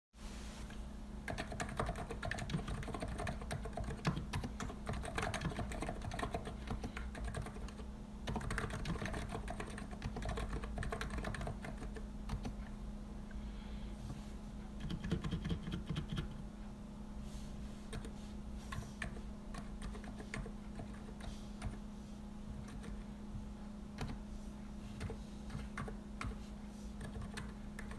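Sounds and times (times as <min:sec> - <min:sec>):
steady low hum: 0:00.2 - 0:27.9
keyboard typing: 0:01.2 - 0:12.7, 0:14.8 - 0:16.4, 0:17.9 - 0:21.8, 0:22.6 - 0:23.1, 0:24.0 - 0:24.2, 0:25.0 - 0:26.4, 0:27.0 - 0:27.9.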